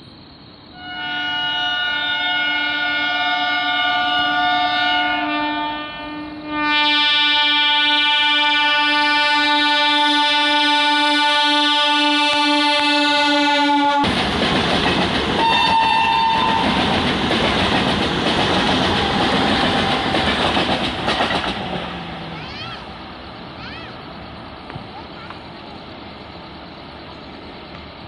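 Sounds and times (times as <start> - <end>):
train running noise: 0.0 - 28.0
train horn: 0.8 - 14.1, 15.4 - 17.0.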